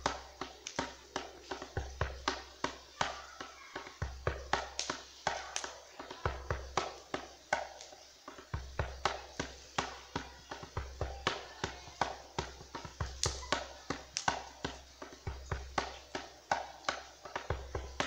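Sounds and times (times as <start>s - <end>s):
hand drum slaps: 0.0s - 18.0s.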